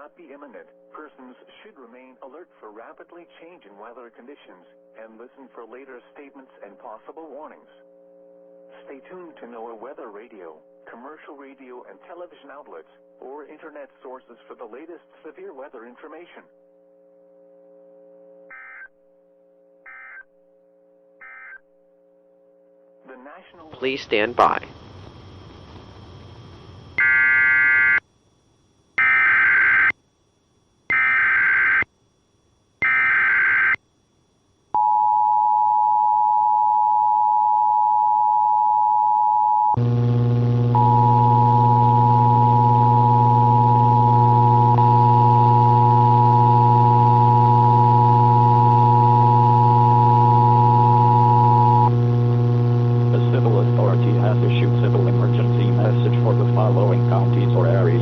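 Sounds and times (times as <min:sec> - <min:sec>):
loud low electrical hum: 0:23.6 - 0:29.4, 0:39.8 - 0:58.0
data tone screeches: 0:39.8 - 0:58.0
faint voice: 0:53.1 - 0:58.0.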